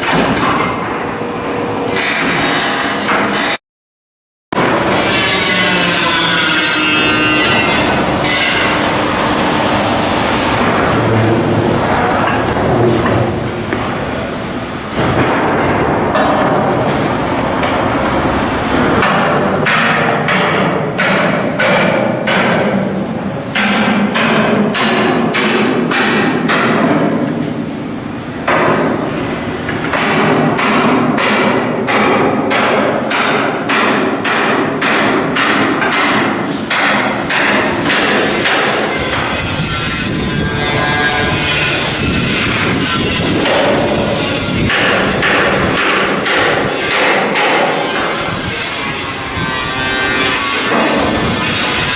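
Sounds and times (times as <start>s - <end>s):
shipyard work noise: 0.0s - 3.6s, 4.5s - 51.9s
hammer striking steel: 19.0s - 22.8s, 29.9s - 51.9s.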